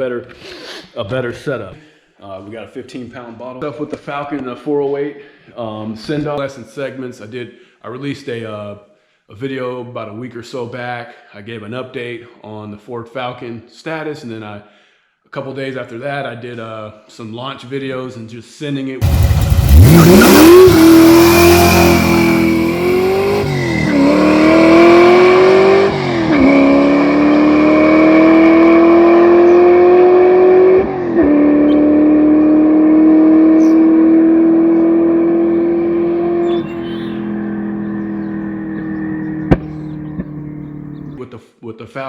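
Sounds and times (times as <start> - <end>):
race car engine accelerating: 19.0 - 41.2.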